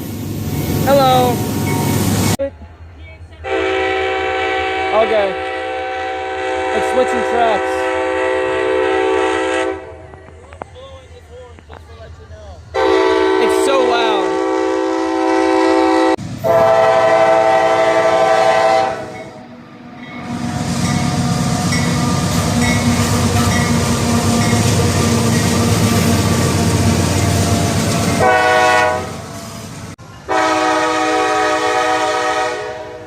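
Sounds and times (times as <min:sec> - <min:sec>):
train rumbling past: 0:00.0 - 0:33.0
locomotive air horn: 0:03.4 - 0:10.0, 0:12.7 - 0:19.4, 0:28.2 - 0:29.4, 0:30.3 - 0:33.0.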